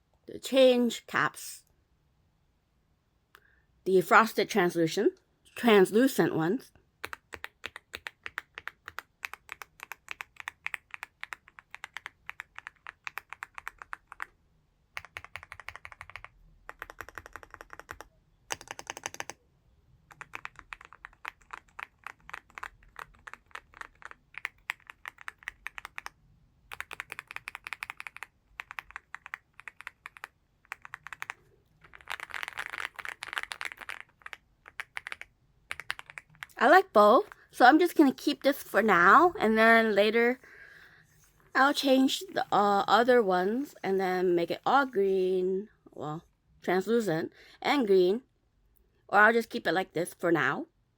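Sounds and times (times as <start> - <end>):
mechanical keyboard typing: 7.0 - 19.4, 20.0 - 36.6.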